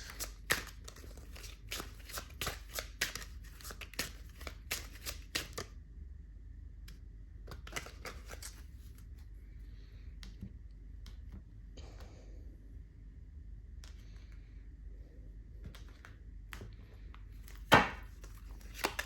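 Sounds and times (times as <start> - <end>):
cards being shuffled: 0.0 - 5.7, 7.4 - 9.2, 17.4 - 19.0.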